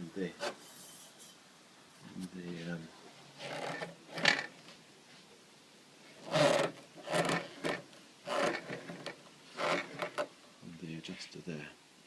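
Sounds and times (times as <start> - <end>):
rubbing and scraping handling noises: 0.2 - 1.4, 2.0 - 5.4, 6.0 - 10.3.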